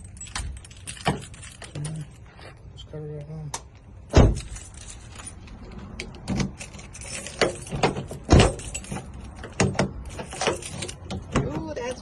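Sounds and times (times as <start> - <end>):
keys jangling: 0.0 - 2.5, 4.1 - 11.2
metal lock clicks and knocks: 7.2 - 11.7.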